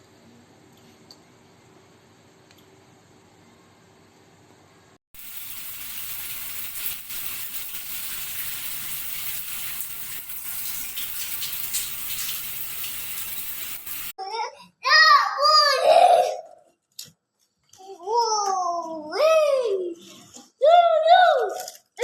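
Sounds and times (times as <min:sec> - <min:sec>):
water running: 0:05.2 - 0:14.2.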